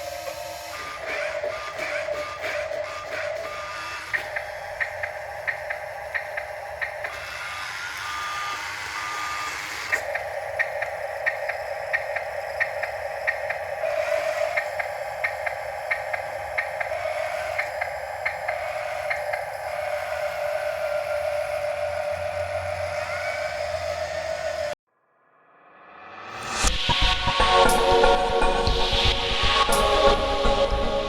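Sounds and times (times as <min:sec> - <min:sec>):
small electric motor whining: 0:00.0 - 0:24.8.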